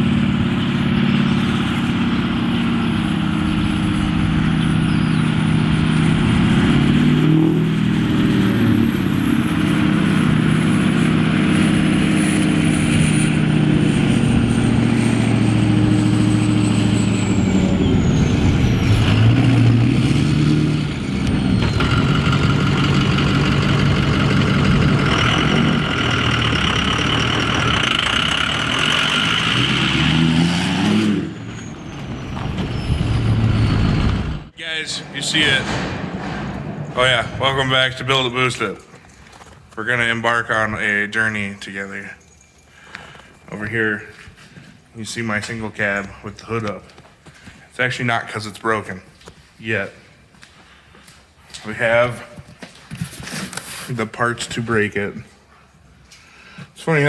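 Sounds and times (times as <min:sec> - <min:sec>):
diesel truck engine revving: 0:00.0 - 0:39.1.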